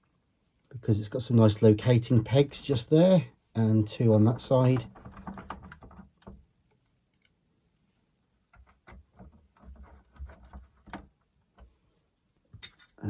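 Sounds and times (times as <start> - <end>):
plastic parts clicking and knocking: 4.3 - 7.4, 8.5 - 11.8.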